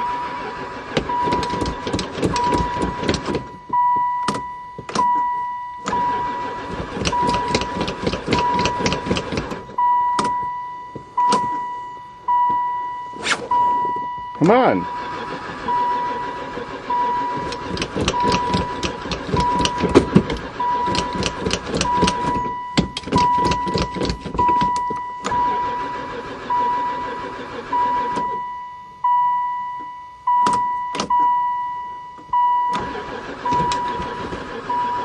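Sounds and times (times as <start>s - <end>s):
starter motor cranking engine: 0.0s - 5.2s, 5.8s - 9.8s, 13.5s - 28.4s, 32.4s - 35.0s
dashboard warning chime: 0.0s - 35.0s
sharp clicks: 17.4s - 25.4s.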